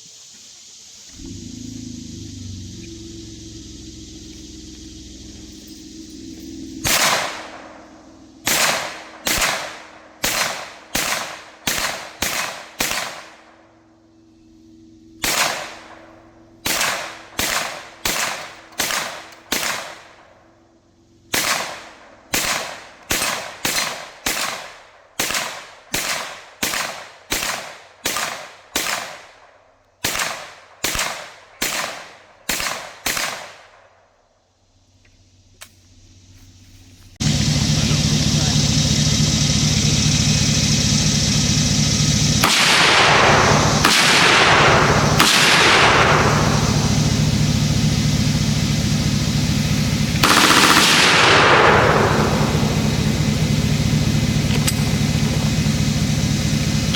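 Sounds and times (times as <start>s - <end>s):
gunshots: 6.8s - 7.8s, 8.4s - 13.5s, 15.2s - 16.0s, 16.6s - 20.2s, 21.3s - 33.8s, 42.3s - 47.8s, 50.1s - 55.4s.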